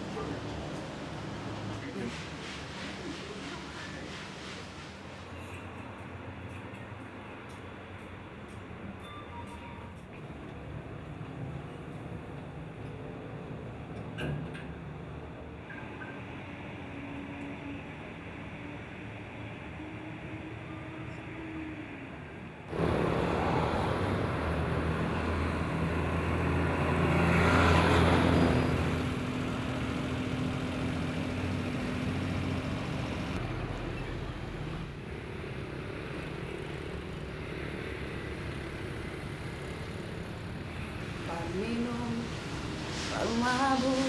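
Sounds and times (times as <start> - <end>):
motor vehicle passing by: 22.7 - 34.8.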